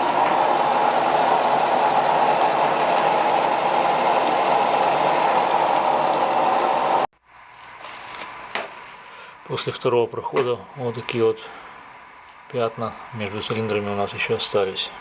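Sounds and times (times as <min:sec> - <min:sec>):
milling machine cutting metal: 0:00.0 - 0:07.1.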